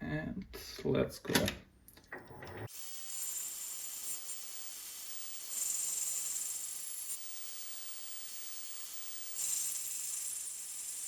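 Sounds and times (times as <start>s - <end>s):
lathe tool hissing on steel: 2.7s - 11.0s.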